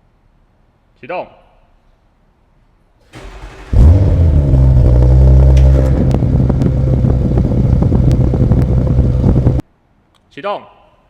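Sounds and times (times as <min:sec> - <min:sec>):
car engine starting and idling: 0:03.2 - 0:09.6.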